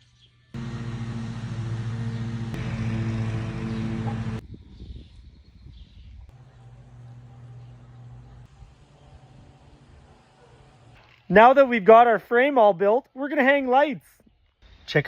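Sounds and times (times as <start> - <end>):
power saw motor whine: 0.6 - 4.4.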